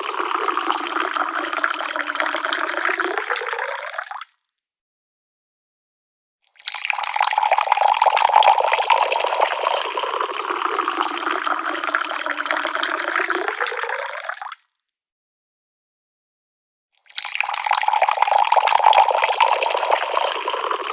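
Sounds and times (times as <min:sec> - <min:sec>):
liquid pouring into a cup: 0:00.0 - 0:04.1, 0:06.6 - 0:14.5, 0:17.1 - 0:20.9.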